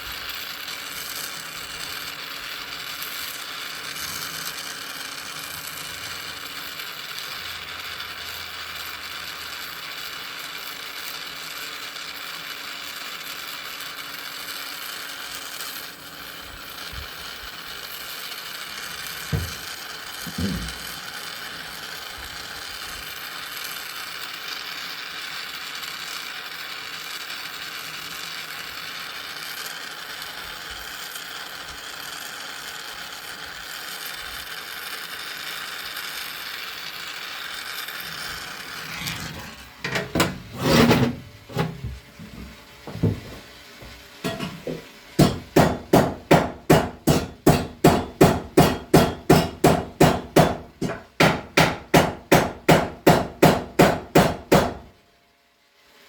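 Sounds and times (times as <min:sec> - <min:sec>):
torch flame hissing: 0:00.0 - 0:52.8
hammer striking metal: 0:44.2 - 0:54.9.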